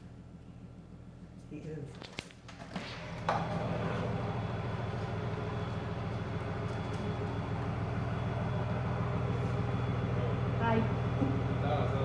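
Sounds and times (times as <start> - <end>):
vehicle engine idling: 2.9 - 12.0.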